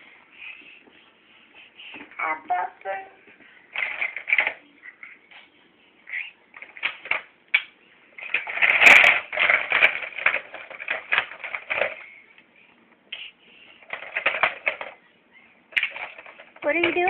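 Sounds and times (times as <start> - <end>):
toy blocks clattering: 8.2 - 12.0, 13.9 - 15.0, 15.8 - 17.0.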